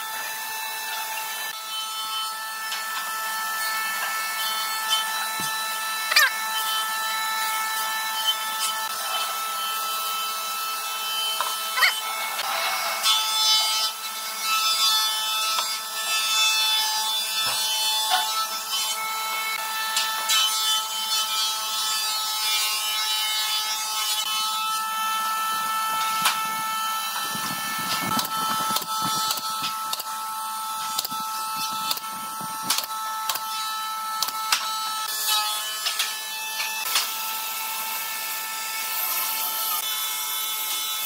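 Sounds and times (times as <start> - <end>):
wood rasping: 23.4 - 33.6
steady mechanical whine: 24.9 - 33.5.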